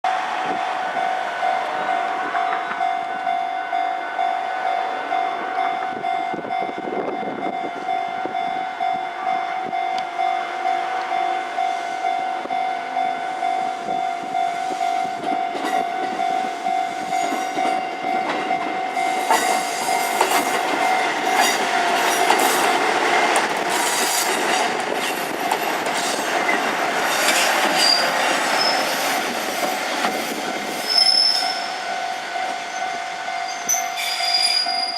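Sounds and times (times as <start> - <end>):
train wheels clattering over rail joints: 17.2 - 30.4.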